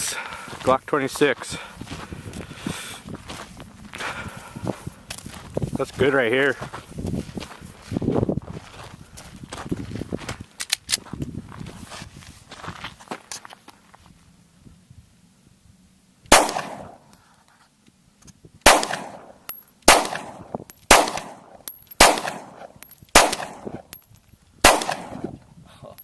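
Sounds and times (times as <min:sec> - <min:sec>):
pistol shots with echo: 0:16.3 - 0:17.0, 0:18.6 - 0:23.8, 0:24.6 - 0:25.3.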